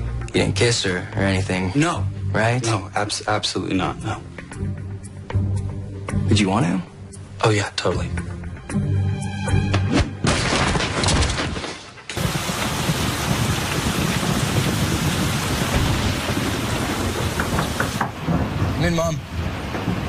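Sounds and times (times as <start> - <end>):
heavy rain: 12.1 - 20.0.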